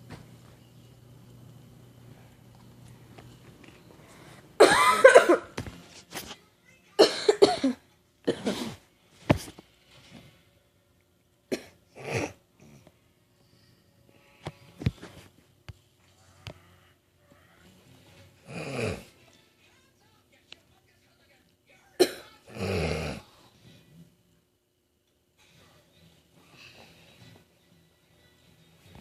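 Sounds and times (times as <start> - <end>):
person coughing: 4.6 - 5.6, 7.0 - 8.8, 11.5 - 12.4, 22.0 - 22.8.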